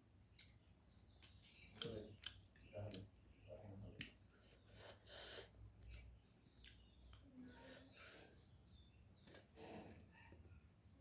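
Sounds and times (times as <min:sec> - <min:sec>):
mouth clicks and smacks chewing: 0:00.2 - 0:03.2, 0:03.9 - 0:07.3.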